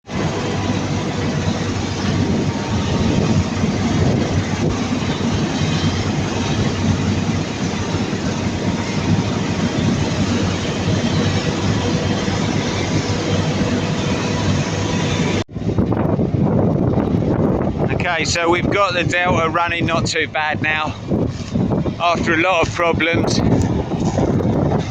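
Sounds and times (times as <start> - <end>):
threshing machinery clatter: 0.0 - 15.4
combine harvester engine drone: 0.0 - 24.9.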